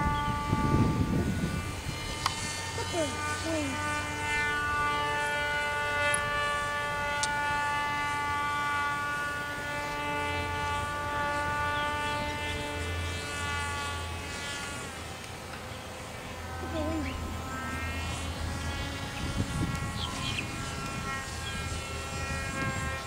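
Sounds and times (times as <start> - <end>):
wind rumble on microphone: 0.0 - 3.5, 18.1 - 23.0
model airplane motor whining: 0.0 - 23.0.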